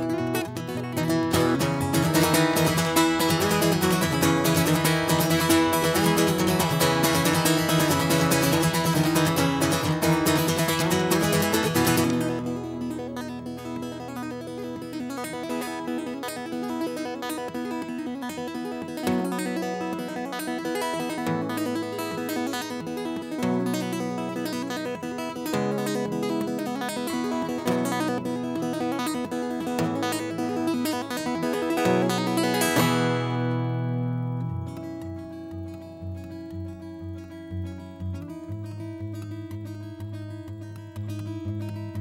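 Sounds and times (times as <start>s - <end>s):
acoustic guitar chords: 0.0s - 42.0s.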